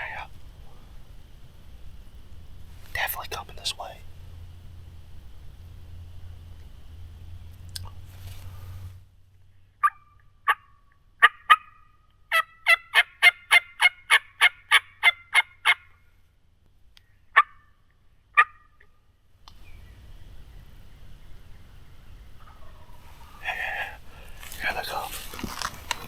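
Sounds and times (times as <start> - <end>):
turkey hen yelping: 9.8 - 16.0, 17.4 - 17.7, 18.4 - 18.9.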